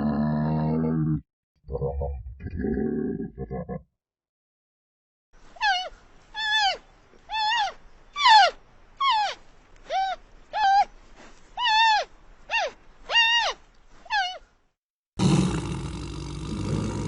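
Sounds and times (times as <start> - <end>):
animal calling: 5.6 - 10.9, 11.6 - 14.4.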